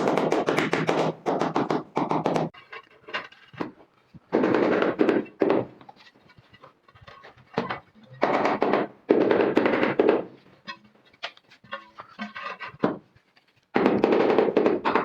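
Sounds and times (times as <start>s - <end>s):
floor tile being tapped: 0.0s - 2.5s.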